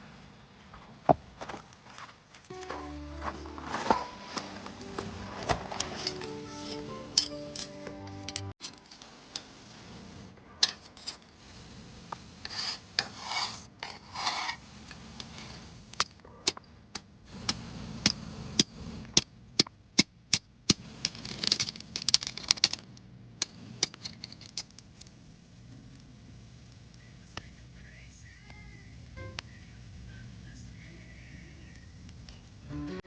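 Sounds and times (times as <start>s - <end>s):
rubbing and scraping: 0.8s - 7.6s, 8.6s - 16.0s
small hard objects clicking: 15.2s - 25.2s.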